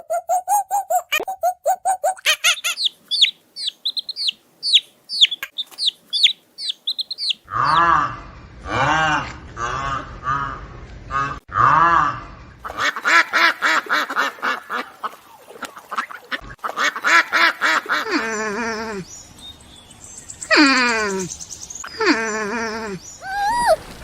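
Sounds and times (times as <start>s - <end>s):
ducks quacking: 2.2s - 8.0s, 12.6s - 19.0s.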